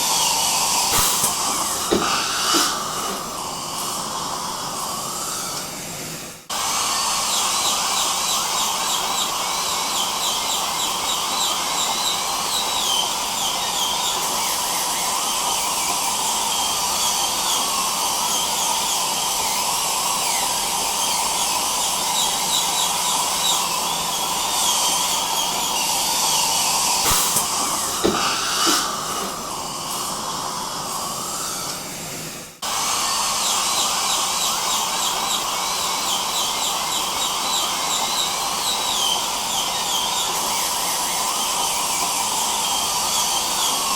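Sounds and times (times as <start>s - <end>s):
dental suction hiss: 0.0s - 5.7s, 22.2s - 31.8s
dental drill whining: 0.0s - 43.9s.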